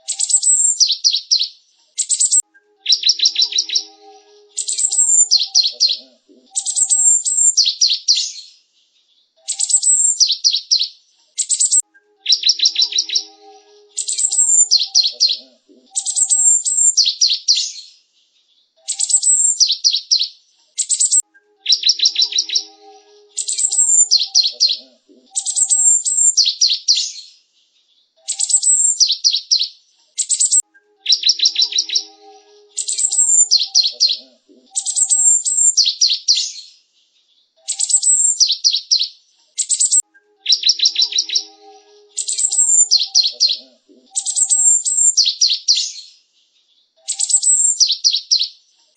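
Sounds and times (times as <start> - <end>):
tit singing: 2.4 - 7.5, 11.8 - 16.8, 21.2 - 26.2, 30.6 - 35.6, 40.0 - 44.9.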